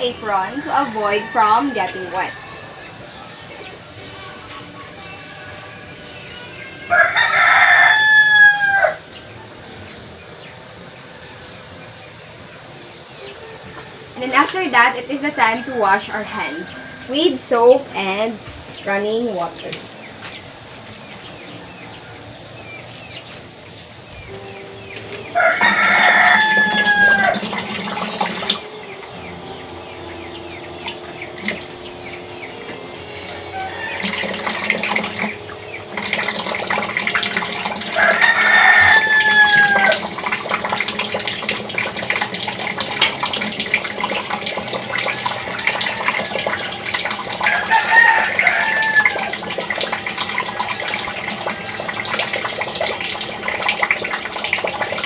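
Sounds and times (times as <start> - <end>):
rooster crowing: 0.1 - 3.6, 6.8 - 9.1, 13.2 - 17.8, 25.2 - 42.0, 44.8 - 52.5
tap water running and splashing: 25.0 - 29.5, 30.5 - 55.0.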